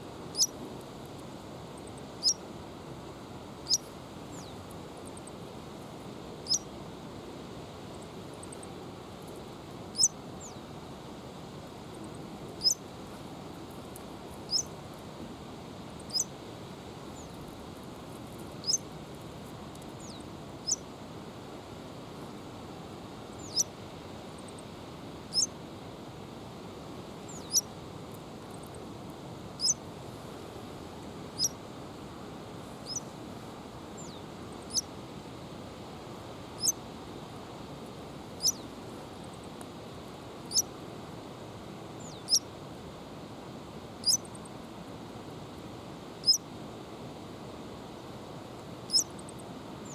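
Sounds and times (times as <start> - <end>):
small bird high call: 0.3 - 0.5, 2.2 - 2.4, 3.7 - 4.6, 6.4 - 6.7, 9.9 - 10.6, 12.6 - 12.8, 14.5 - 14.7, 16.0 - 16.3, 18.6 - 18.8, 20.0 - 20.9, 23.4 - 23.7, 25.3 - 25.5, 27.3 - 27.7, 29.6 - 29.8, 31.4 - 31.6, 32.8 - 33.1, 34.0 - 34.9, 36.6 - 36.8, 38.4 - 38.7, 40.5 - 40.7, 42.0 - 42.5, 44.0 - 44.3, 46.2 - 46.4, 48.9 - 49.1.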